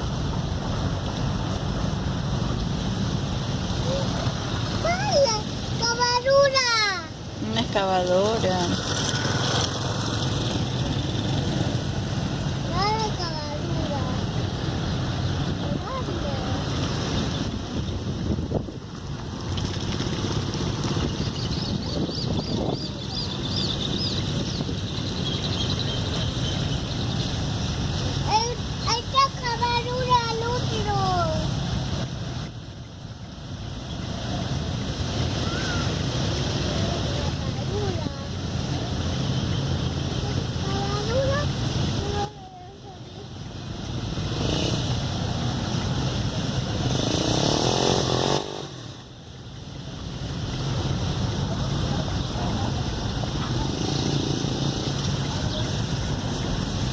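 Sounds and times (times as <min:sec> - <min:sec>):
vehicle engine rumbling: 0:00.0 - 0:56.9
wind buffeting microphone: 0:07.2 - 0:32.5
bird chirping: 0:21.0 - 0:27.4.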